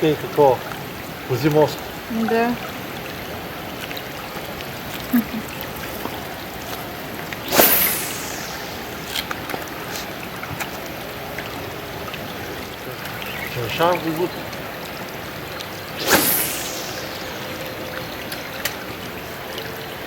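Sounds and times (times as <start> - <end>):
river water flowing: 0.0 - 20.0
sharp whoosh: 7.5 - 9.5, 16.0 - 18.0.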